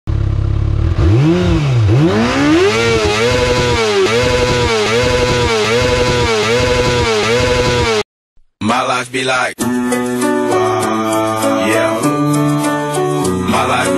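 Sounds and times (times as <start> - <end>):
motorcycle engine revving: 0.1 - 8.1.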